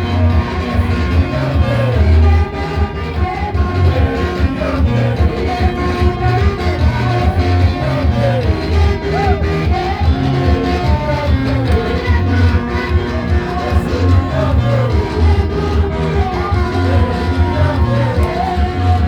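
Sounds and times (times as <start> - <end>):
upbeat praise music with singing: 0.0 - 19.0.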